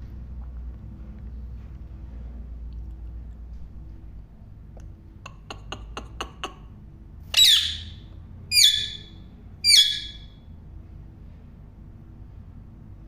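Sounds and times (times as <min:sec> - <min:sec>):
parrot clicking chirps: 0:05.3 - 0:06.6
parrot harsh squawks: 0:07.3 - 0:10.4.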